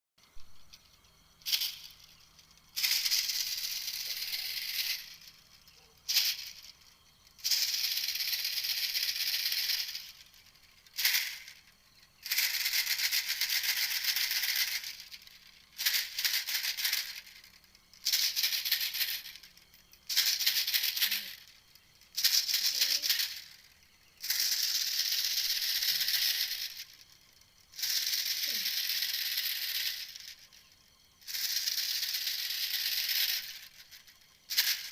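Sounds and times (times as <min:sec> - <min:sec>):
rasping rattle animal call: 0:00.7 - 0:34.9.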